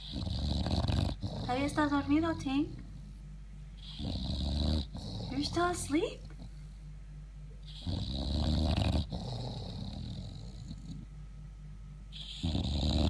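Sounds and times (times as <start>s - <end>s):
dog snoring loudly: 0.0s - 3.2s, 3.8s - 6.6s, 7.6s - 11.1s, 12.1s - 13.0s.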